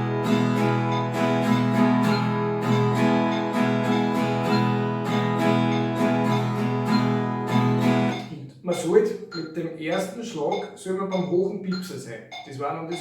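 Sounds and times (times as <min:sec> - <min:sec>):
nylon-string guitar strumming: 0:00.0 - 0:08.2.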